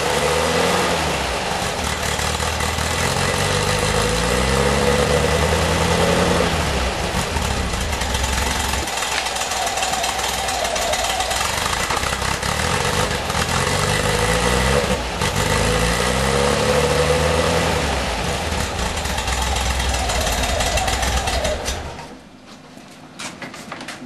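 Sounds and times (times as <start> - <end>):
car engine idling roughly: 1.4 - 4.3, 6.8 - 15.6, 18.1 - 22.1.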